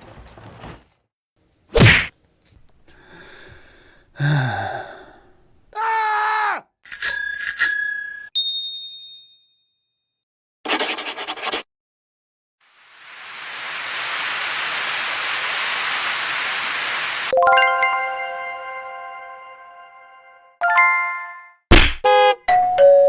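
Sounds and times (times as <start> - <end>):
sharp hit: 1.8 - 2.1.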